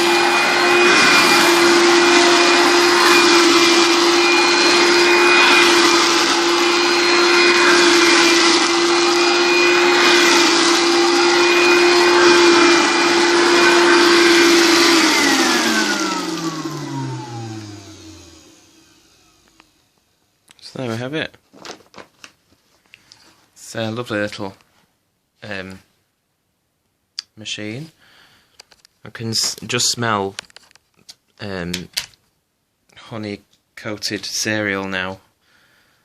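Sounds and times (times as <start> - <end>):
handheld vacuum motor whine: 0.0 - 19.9.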